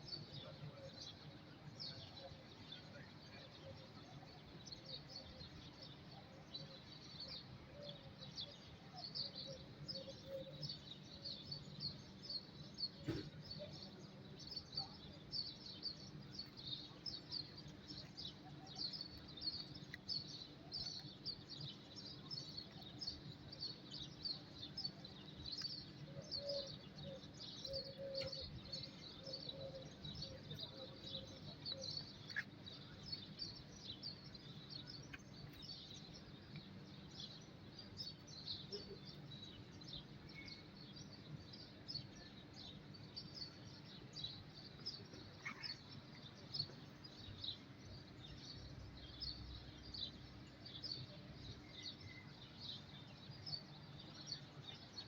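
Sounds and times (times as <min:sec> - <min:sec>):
small birds chirping: 0:00.0 - 0:55.0.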